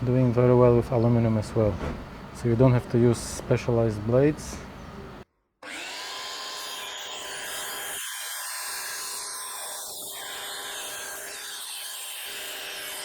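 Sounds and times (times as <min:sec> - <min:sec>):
miter saw cutting aluminum: 0:05.6 - 0:13.0.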